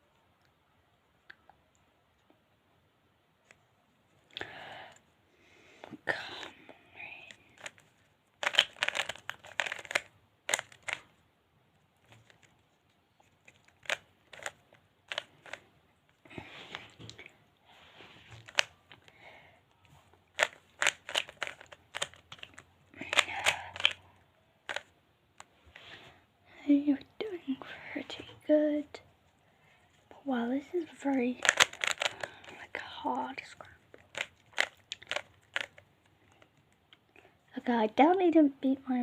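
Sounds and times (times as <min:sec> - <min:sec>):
puzzle cube clicking and rattling: 0:07.1 - 0:11.1, 0:12.0 - 0:12.5, 0:13.2 - 0:15.7, 0:18.4 - 0:19.1, 0:20.3 - 0:24.9, 0:30.7 - 0:36.5.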